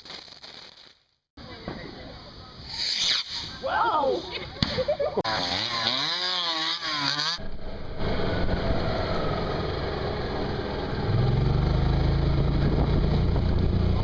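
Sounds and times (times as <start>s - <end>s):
engine running: 5.3s - 14.0s.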